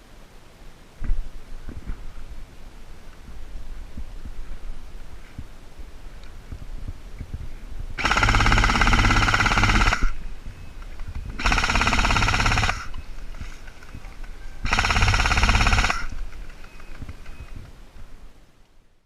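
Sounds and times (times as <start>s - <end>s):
airsoft machine gun bursts: 8.0s - 10.2s, 11.3s - 13.0s, 14.6s - 17.0s.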